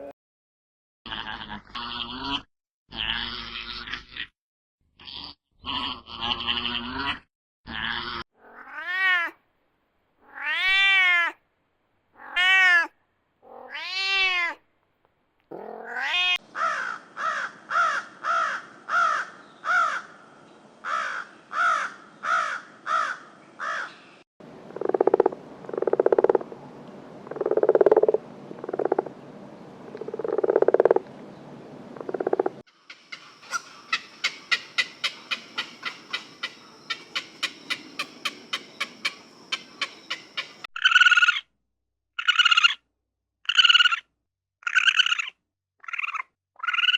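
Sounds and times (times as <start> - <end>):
farm animal calls: 32.9 - 40.9.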